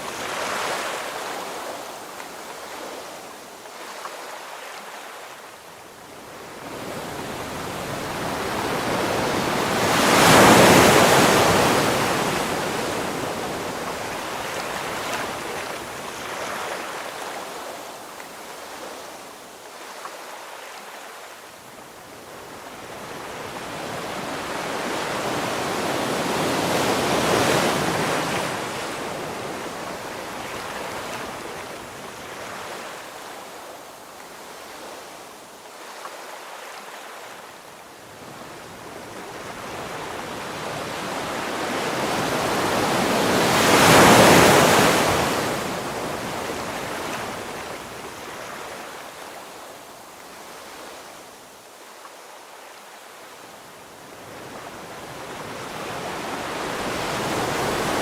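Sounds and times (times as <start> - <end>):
surf hiss: 0.0 - 58.0
ocean waves breaking: 6.3 - 17.6, 38.6 - 49.2, 54.2 - 58.0.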